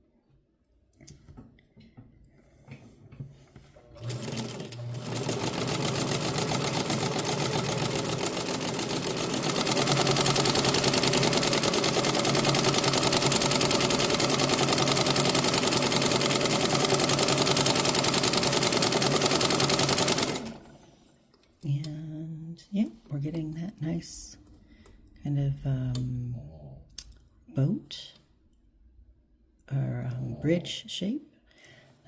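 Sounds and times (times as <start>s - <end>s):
sewing machine stitching: 3.6s - 21.0s.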